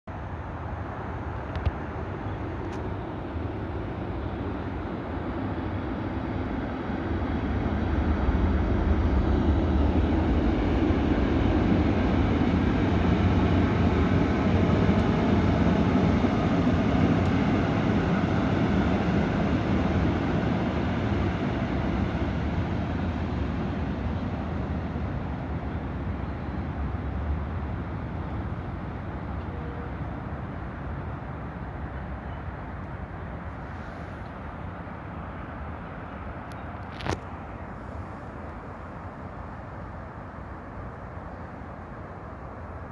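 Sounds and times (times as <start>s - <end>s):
train passing by rumbling: 0.1s - 42.9s.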